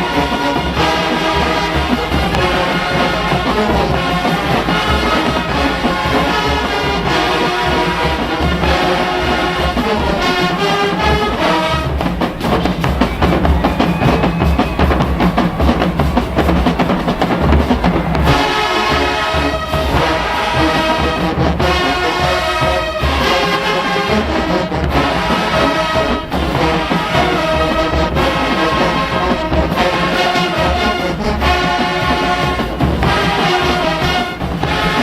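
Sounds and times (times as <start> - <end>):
drumline percussion: 0.0 - 35.0
marching band brass chords: 0.0 - 35.0.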